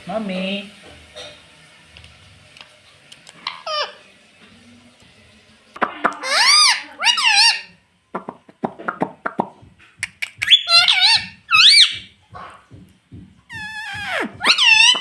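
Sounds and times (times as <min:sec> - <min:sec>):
parrot squawking: 0:03.4 - 0:04.1, 0:05.8 - 0:07.8, 0:10.4 - 0:12.6, 0:13.5 - 0:15.0.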